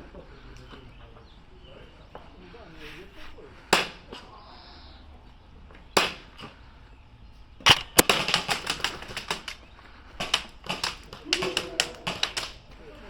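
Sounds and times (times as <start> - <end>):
airsoft gun shots: 7.6 - 9.6, 10.2 - 12.6.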